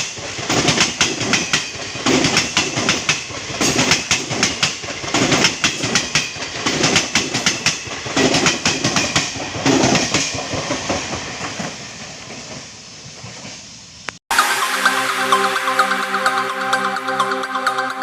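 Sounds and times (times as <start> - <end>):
train wheels clattering over rail joints: 0.0 - 13.8
train rushing past: 0.0 - 18.0.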